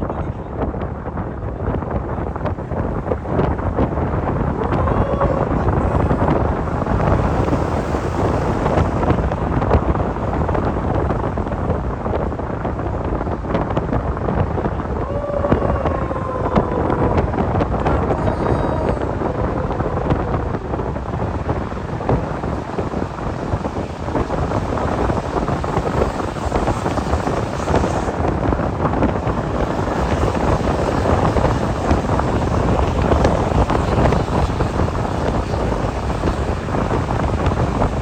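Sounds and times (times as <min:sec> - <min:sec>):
moving road vehicle noise: 0:00.0 - 0:38.0
wind buffeting microphone: 0:00.0 - 0:38.0.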